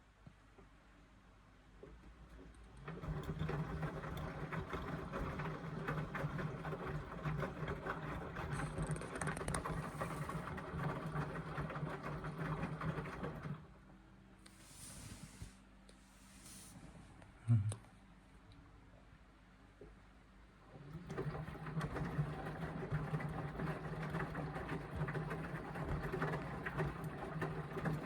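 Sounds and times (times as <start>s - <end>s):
washing machine drum motor humming: 2.2s - 13.9s, 20.7s - 28.0s
wet laundry clattering and swishing: 20.9s - 28.0s.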